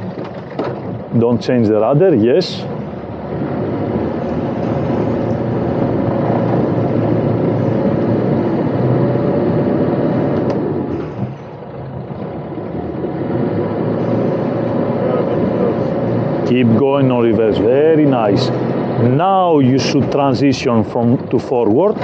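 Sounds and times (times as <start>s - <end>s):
boat engine droning: 0.0s - 22.0s.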